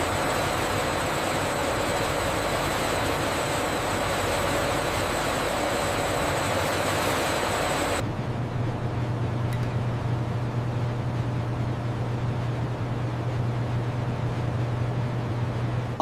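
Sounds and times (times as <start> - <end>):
factory machinery hissing: 0.0 - 8.0
steady high whine: 0.0 - 16.0.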